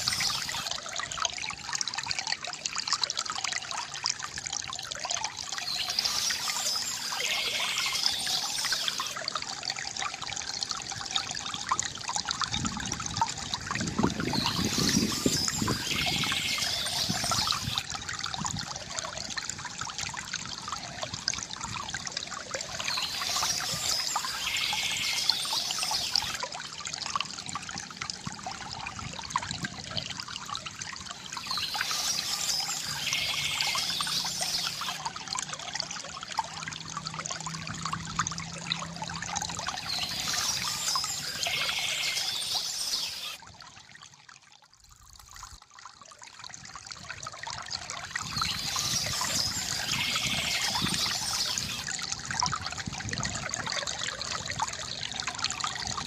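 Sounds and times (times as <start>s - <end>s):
bird singing short high phrase: 0.0s - 0.7s, 5.6s - 9.2s, 14.3s - 17.8s, 22.9s - 26.4s, 31.4s - 35.0s, 39.8s - 43.4s, 48.3s - 51.8s
stream water trickling: 0.0s - 56.0s.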